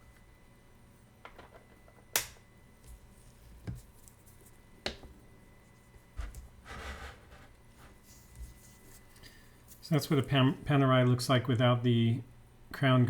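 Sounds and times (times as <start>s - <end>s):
rustle of handling: 5.6s - 10.4s.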